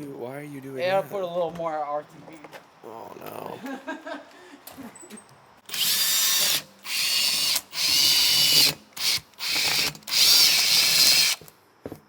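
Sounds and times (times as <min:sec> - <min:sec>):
power drill driving a screw: 0:05.7 - 0:11.5.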